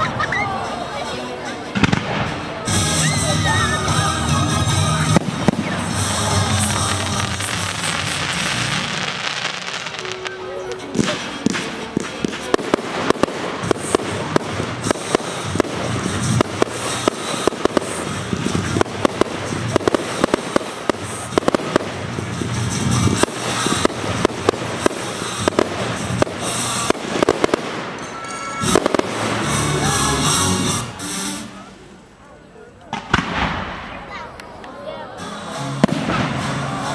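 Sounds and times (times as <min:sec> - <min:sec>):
fireworks bangs and crackling: 0:00.0 - 0:31.7, 0:32.8 - 0:34.7, 0:35.7 - 0:36.9.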